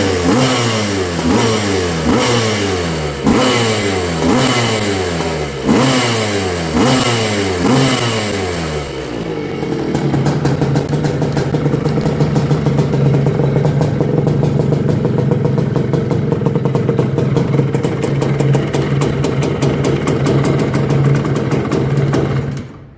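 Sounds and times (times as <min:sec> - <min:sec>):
motocross engine revving and idling: 0:00.0 - 0:22.8.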